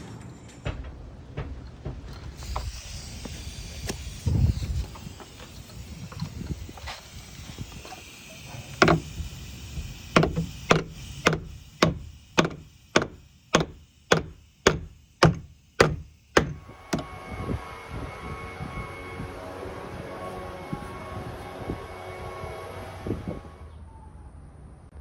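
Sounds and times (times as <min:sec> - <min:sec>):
hammer blows on wood: 0:10.2 - 0:23.4.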